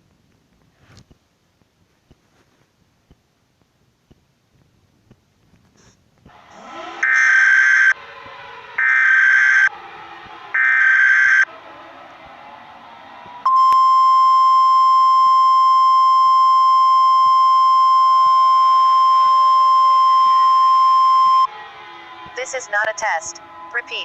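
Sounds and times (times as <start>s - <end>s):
steady electronic attention tone: 6.3s - 11.6s, 13.4s - 21.7s
harsh buzzing data bursts: 6.5s - 8.0s, 10.5s - 11.4s.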